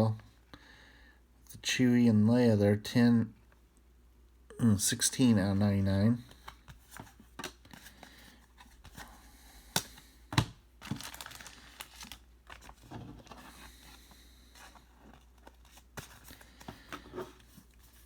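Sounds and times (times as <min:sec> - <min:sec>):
cards clicking: 0:09.7 - 0:10.6
wrapper crinkling and tearing: 0:09.8 - 0:13.4.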